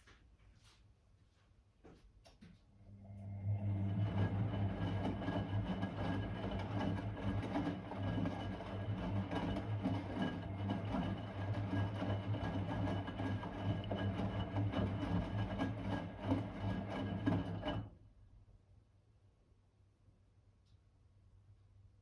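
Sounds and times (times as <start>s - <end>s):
washing machine motor hum: 2.8s - 18.0s
drum churning rattle: 4.5s - 17.9s.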